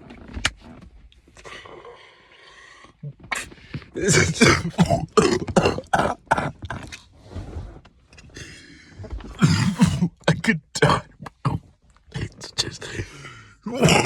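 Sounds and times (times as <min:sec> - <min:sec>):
man coughing and clearing throat: 0:04.0 - 0:06.9, 0:09.3 - 0:14.0
raspy breath: 0:12.8 - 0:13.7.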